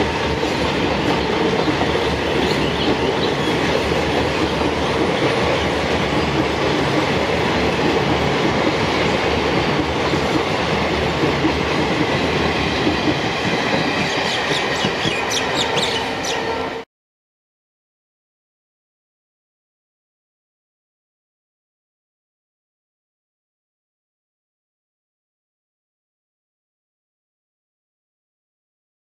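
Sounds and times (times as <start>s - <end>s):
train rumbling past: 0.0s - 16.9s.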